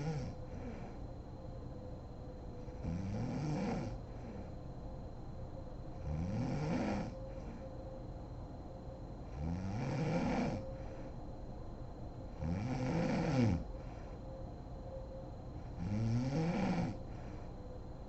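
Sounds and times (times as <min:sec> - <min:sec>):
woman snoring: 0:00.0 - 0:01.0, 0:02.8 - 0:04.4, 0:06.0 - 0:07.6, 0:09.4 - 0:10.7, 0:12.4 - 0:13.7, 0:15.7 - 0:17.0.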